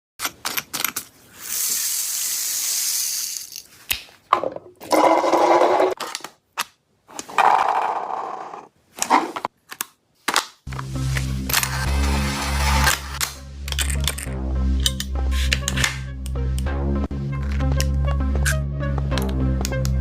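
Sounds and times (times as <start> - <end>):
toy blaster rapid whirring: 1.4 - 3.5.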